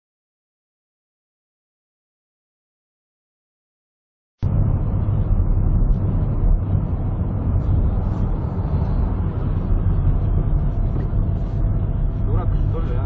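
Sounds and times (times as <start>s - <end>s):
car engine and road noise: 4.4s - 13.0s.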